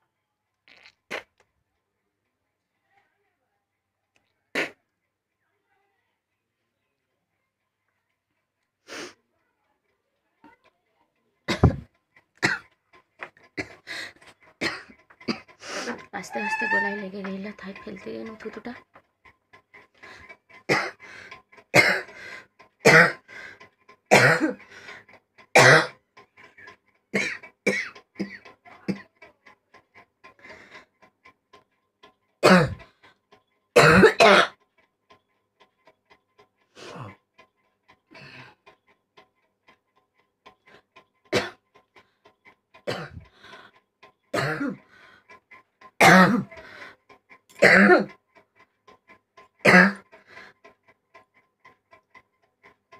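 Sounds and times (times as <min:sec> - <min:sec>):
person coughing hoarsely: 0:11.5 - 0:12.7, 0:20.7 - 0:21.0, 0:21.7 - 0:22.1, 0:22.8 - 0:23.2, 0:24.1 - 0:24.6, 0:25.6 - 0:26.0, 0:27.1 - 0:29.0, 0:32.4 - 0:32.8, 0:33.8 - 0:34.6, 0:41.3 - 0:41.6, 0:42.9 - 0:43.2, 0:44.4 - 0:44.8, 0:46.0 - 0:46.6, 0:47.6 - 0:48.1, 0:49.6 - 0:50.0.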